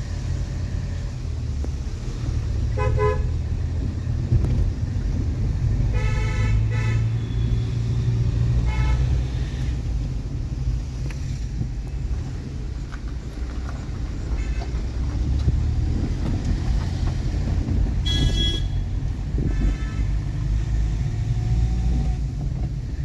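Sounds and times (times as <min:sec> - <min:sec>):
vehicle driving rumble: 0:00.0 - 0:23.0
car horn honking: 0:02.7 - 0:03.4, 0:05.8 - 0:07.8, 0:08.6 - 0:09.3, 0:18.0 - 0:20.7.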